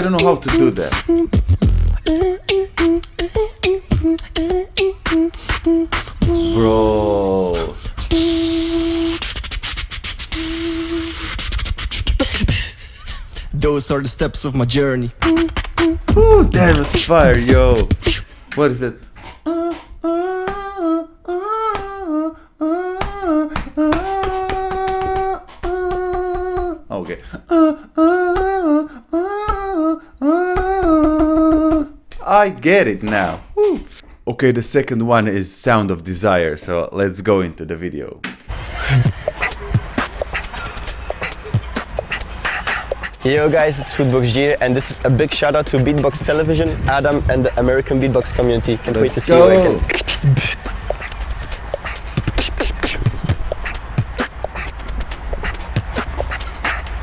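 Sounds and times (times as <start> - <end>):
held wavering vocal tone: 0.0 - 9.6, 10.2 - 13.6, 15.0 - 18.4, 19.2 - 32.0, 38.5 - 57.0
person humming a melody: 0.0 - 9.6, 10.2 - 13.5, 15.2 - 18.2, 19.4 - 32.0, 48.9 - 57.0
beatboxing: 0.0 - 32.2, 38.5 - 57.0.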